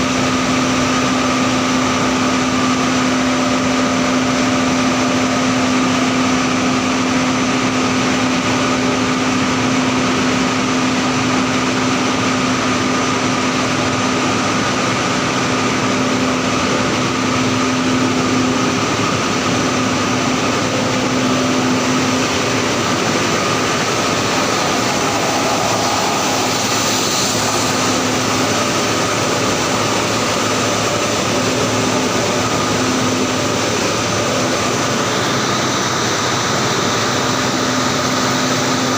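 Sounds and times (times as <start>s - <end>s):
industrial machinery noise: 0.0s - 38.9s
low hum: 20.6s - 33.5s.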